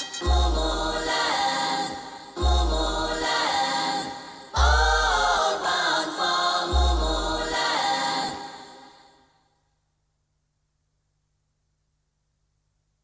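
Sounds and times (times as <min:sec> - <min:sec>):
choir-like chant: 0:00.0 - 0:09.4.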